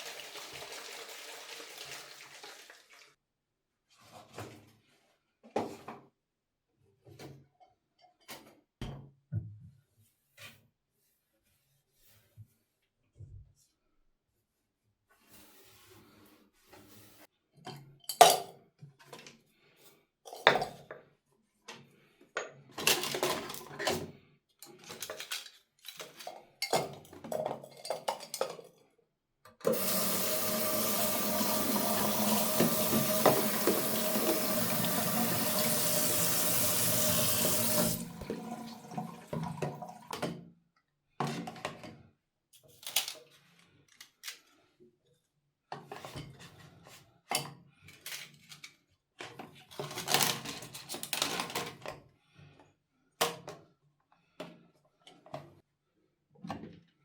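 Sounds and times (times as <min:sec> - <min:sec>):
tap water running into sink: 0:00.0 - 0:03.1, 0:29.7 - 0:40.3.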